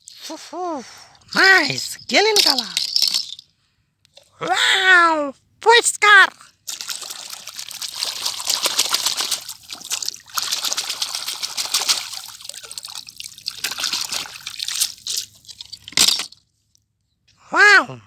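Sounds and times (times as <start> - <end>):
water trickling and splashing: 6.6 - 15.9
scrubbing by hand: 6.7 - 15.6.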